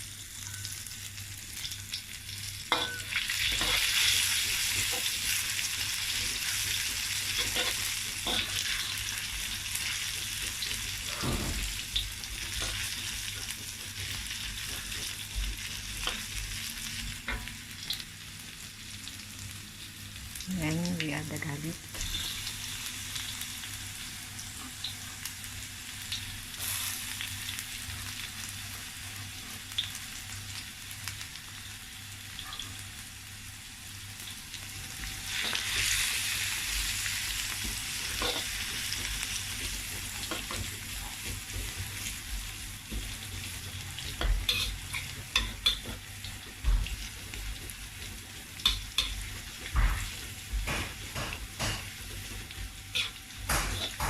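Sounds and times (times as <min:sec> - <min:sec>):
ginger and garlic sizzling in oil: 0:00.0 - 0:54.0
utensil knocking against wok: 0:48.6 - 0:54.0.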